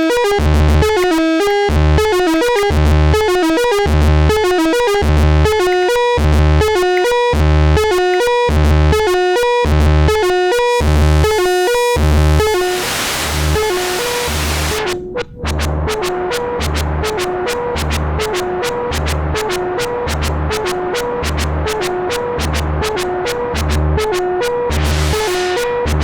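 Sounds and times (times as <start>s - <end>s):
synthesizer arpeggio: 10.0s - 26.0s
hissing noise wash: 10.8s - 14.8s.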